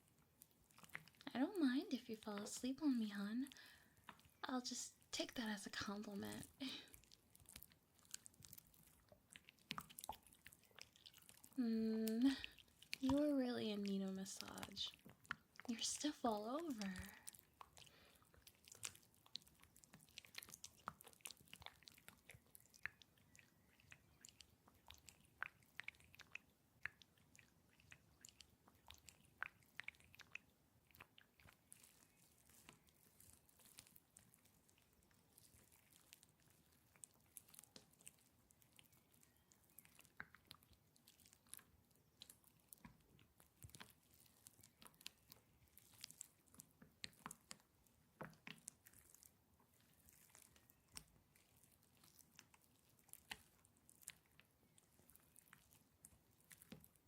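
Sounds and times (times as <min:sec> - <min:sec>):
wet squishing of gel between hands: 0:00.0 - 0:57.0.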